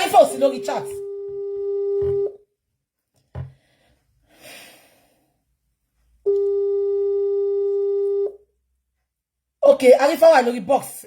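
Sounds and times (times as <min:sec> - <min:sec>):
phone ringback tone: 0:00.0 - 0:02.4, 0:06.3 - 0:08.4
soft knock: 0:03.3 - 0:03.6.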